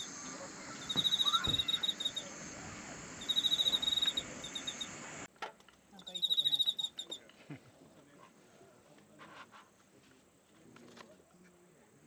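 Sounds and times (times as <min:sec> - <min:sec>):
cricket chirping: 0:00.0 - 0:05.1, 0:06.0 - 0:07.2.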